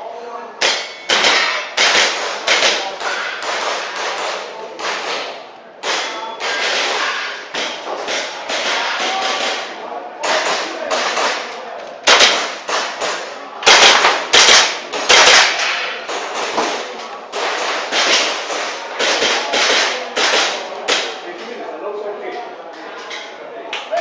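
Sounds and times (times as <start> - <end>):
airsoft pistol shots: 12.0 - 16.8.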